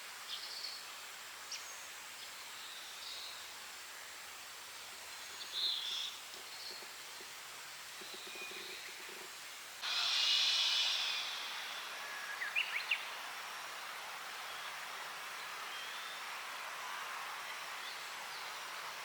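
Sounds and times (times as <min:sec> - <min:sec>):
steady outdoor hiss: 0:00.0 - 0:19.0
rising bird calls: 0:09.8 - 0:13.4
loud high buzz: 0:09.8 - 0:14.1
high bird chirps: 0:09.9 - 0:13.2.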